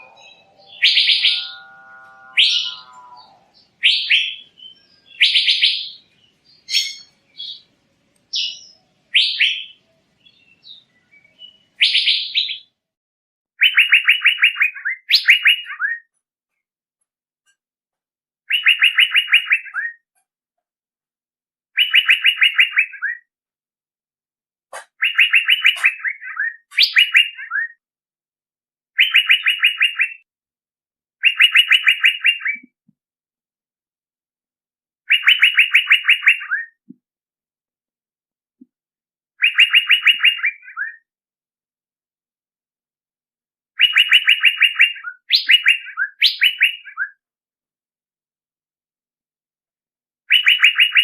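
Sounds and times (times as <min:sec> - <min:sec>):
bird trilling call: 0:00.0 - 0:06.0, 0:06.6 - 0:07.6, 0:39.4 - 0:41.0, 0:43.8 - 0:47.1.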